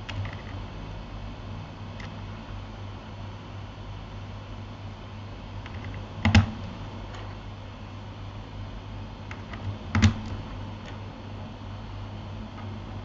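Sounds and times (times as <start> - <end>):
mechanical keyboard keystrokes: 0.1 - 0.6, 5.6 - 6.6, 9.3 - 11.0.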